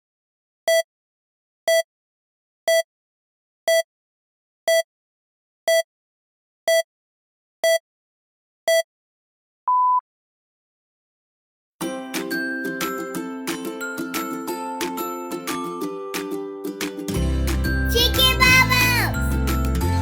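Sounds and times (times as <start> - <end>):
electronic countdown beeps: 0.7 - 0.9, 1.7 - 1.9, 2.7 - 2.9, 3.7 - 3.9, 4.7 - 4.9, 5.7 - 5.9, 6.7 - 6.9, 7.6 - 7.8, 8.7 - 8.9.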